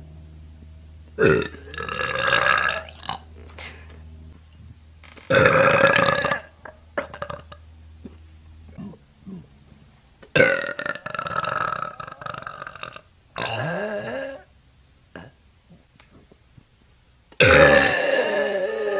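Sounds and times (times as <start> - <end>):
woman burping: 1.2 - 4.0, 5.2 - 9.5, 10.3 - 14.5, 15.1 - 15.4, 17.4 - 18.9.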